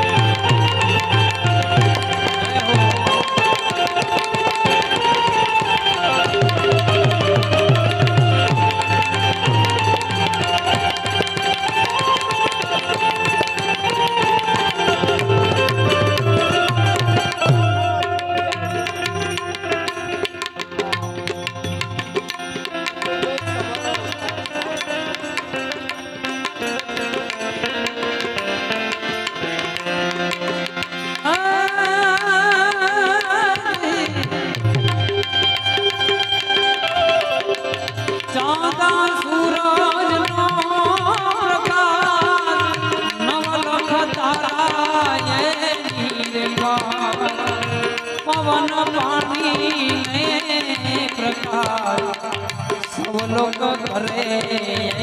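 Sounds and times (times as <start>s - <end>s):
wavering lead melody: 0.0s - 31.7s
harmonium chords: 0.0s - 55.0s
tabla rhythm: 0.0s - 55.0s.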